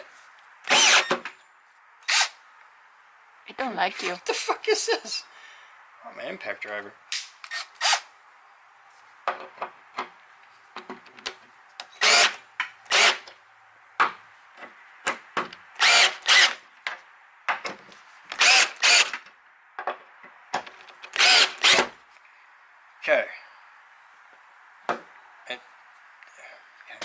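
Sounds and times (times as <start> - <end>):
impact driver bursts: 0.6 - 1.2, 12.0 - 13.2, 15.8 - 16.6, 18.3 - 19.2, 21.1 - 22.0.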